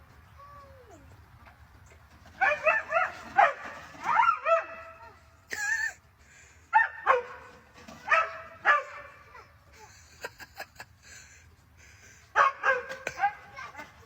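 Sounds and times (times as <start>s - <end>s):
dog barking: 2.4s - 5.1s, 6.7s - 9.3s, 12.4s - 13.6s.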